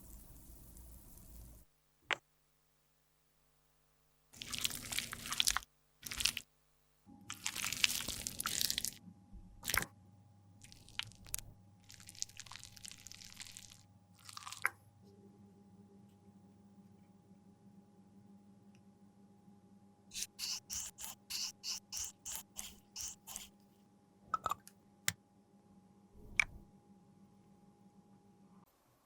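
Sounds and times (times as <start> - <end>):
makeup product being scraped: 20.1 - 23.6.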